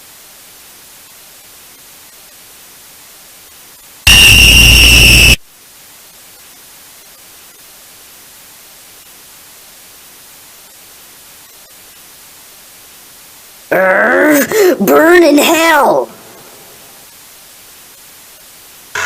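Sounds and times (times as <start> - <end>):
static hiss: 0.0 - 19.0
high-pitched alarm tone: 4.1 - 5.4
loud voice: 13.7 - 16.2.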